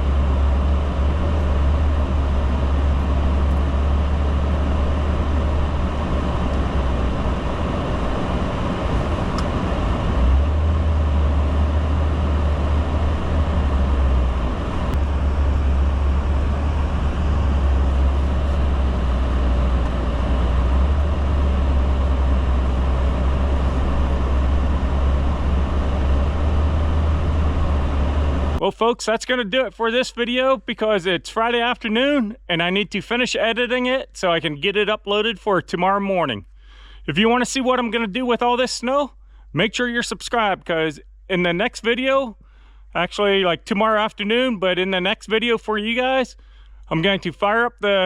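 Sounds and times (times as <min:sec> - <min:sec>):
vehicle engine droning: 0:00.0 - 0:28.7.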